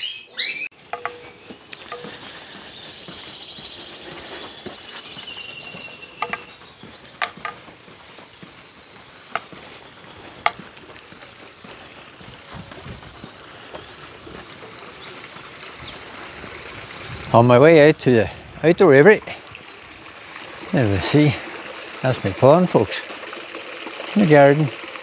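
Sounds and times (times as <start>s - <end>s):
finches twittering: 0.0s - 10.8s, 11.9s - 17.5s
sharp clicks and knocks: 0.8s - 2.2s, 6.2s - 6.5s, 7.2s - 7.8s, 9.3s - 9.6s.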